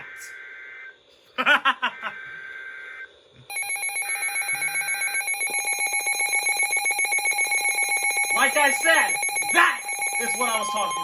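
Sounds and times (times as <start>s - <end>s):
rapidly pulsing alarm tone: 0.0s - 11.0s
two-pitch data tones: 3.5s - 11.0s.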